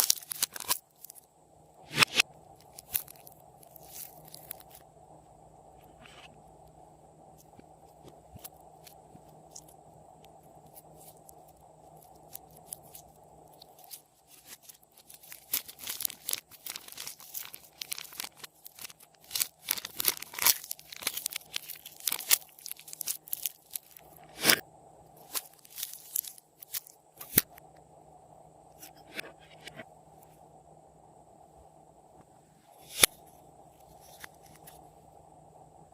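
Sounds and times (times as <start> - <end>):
slime crackling and popping: 0.0 - 1.2, 2.6 - 4.8, 10.7 - 24.5, 25.2 - 27.6.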